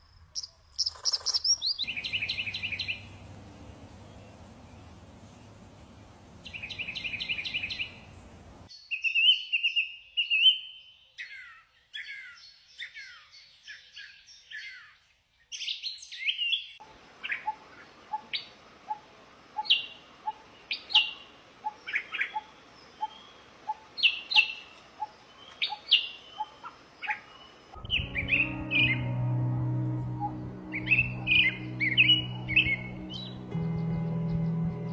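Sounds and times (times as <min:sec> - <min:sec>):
songbirds chirping and singing: 0:00.4 - 0:17.5, 0:24.0 - 0:34.9
low steady hum: 0:01.8 - 0:08.7, 0:27.8 - 0:34.9.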